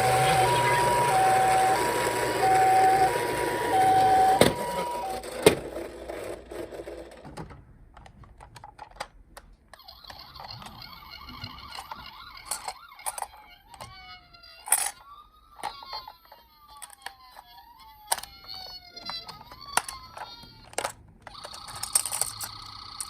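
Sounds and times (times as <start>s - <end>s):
wailing siren: 0.0s - 5.2s
wavering siren: 0.0s - 5.2s
two-tone hi-lo toy siren: 0.0s - 5.3s, 9.8s - 20.6s, 21.3s - 23.0s.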